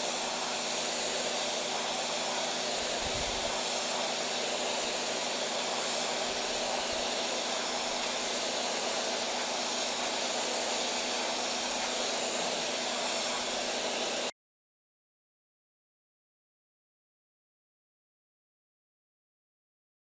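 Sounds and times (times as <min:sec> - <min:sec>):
pressure washer spraying: 0:00.0 - 0:14.3.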